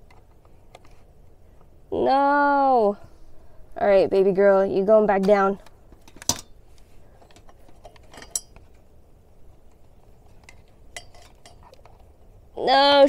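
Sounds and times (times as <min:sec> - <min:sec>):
light stand parts clicking: 0:07.2 - 0:08.8.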